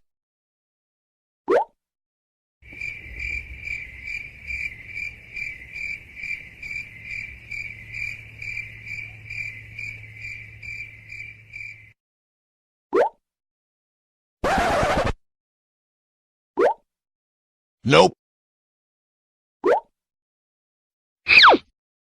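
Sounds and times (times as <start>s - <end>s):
crickets chirping: 2.6s - 12.0s.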